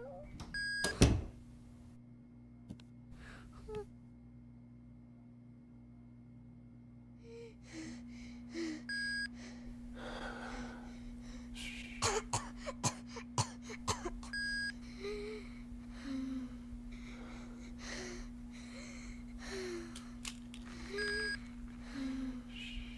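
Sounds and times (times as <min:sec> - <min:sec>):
steady low hum: 0:00.0 - 0:22.9
coughing: 0:12.0 - 0:14.5.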